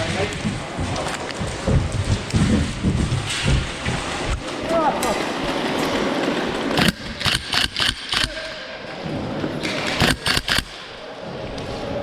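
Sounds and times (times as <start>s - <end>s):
airsoft rifle shots: 6.8s - 8.6s, 9.9s - 10.8s.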